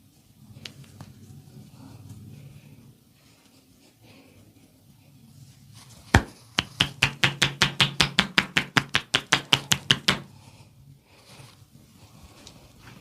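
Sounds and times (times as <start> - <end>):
hands slapping body: 6.1 - 10.3.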